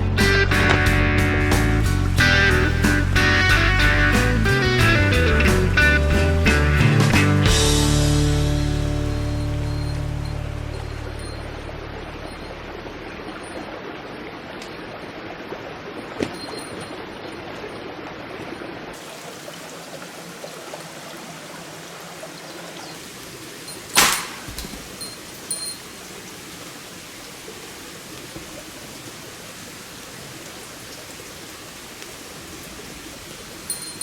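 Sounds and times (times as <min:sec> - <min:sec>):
rushing outdoor background noise: 0:00.0 - 0:34.0
loud sharp metal clank: 0:24.0 - 0:24.8
faint metallic ring: 0:25.0 - 0:25.9, 0:33.7 - 0:34.0.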